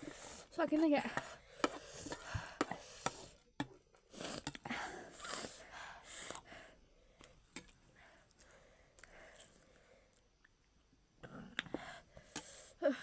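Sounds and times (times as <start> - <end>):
noisy mouth breaths: 0.0 - 7.4.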